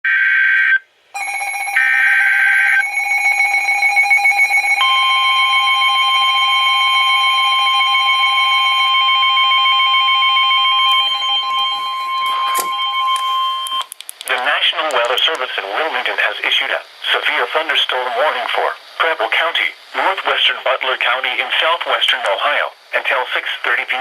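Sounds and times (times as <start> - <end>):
steady electronic attention tone: 1.2 - 13.9.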